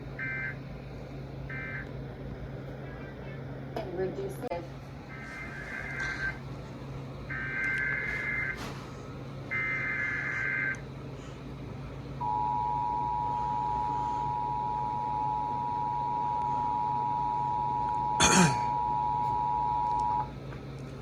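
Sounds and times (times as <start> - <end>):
two-tone attention signal: 12.2 - 20.3.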